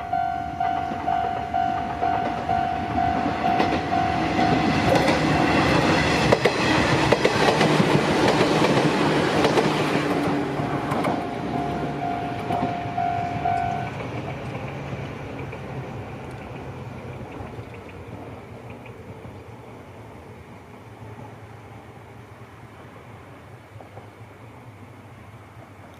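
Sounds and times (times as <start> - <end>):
level-crossing warning alarm: 0.0 - 6.9, 10.8 - 14.0
train wheels clattering on rails: 0.6 - 19.6, 23.7 - 24.3.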